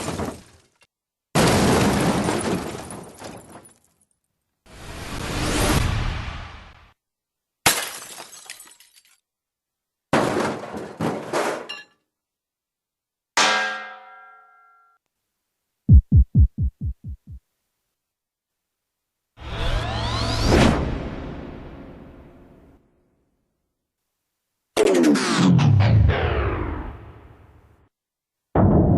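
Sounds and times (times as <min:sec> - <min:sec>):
clattering breaking sound: 0:00.0 - 0:04.2, 0:07.7 - 0:09.2, 0:10.2 - 0:12.0
metallic clang with ringing: 0:13.4 - 0:15.0.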